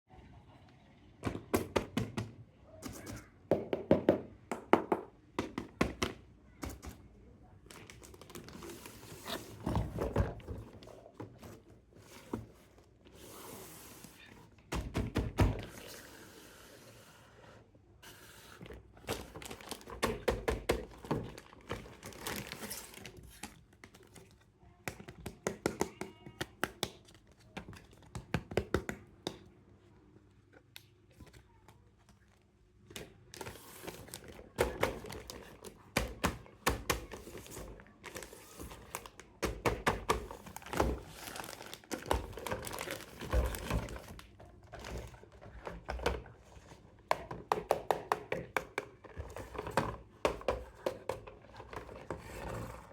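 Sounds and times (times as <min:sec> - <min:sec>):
packaging rustling and crinkling: 0:07.6 - 0:12.8, 0:19.0 - 0:24.4, 0:37.0 - 0:46.0.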